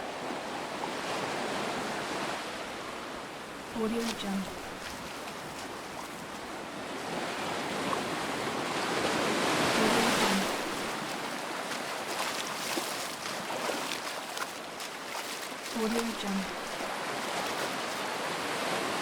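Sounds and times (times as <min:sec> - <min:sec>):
footsteps splashing in shallow water: 0:03.5 - 0:19.0
waves washing on pebbles: 0:03.7 - 0:19.0.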